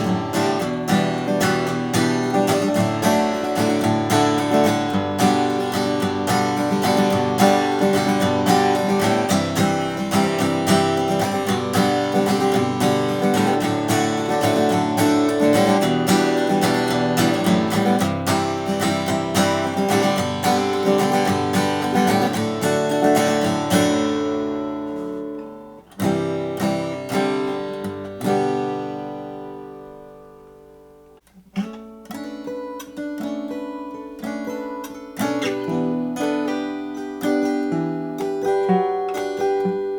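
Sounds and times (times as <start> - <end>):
acoustic guitar strummed and picked: 0.0 - 39.9.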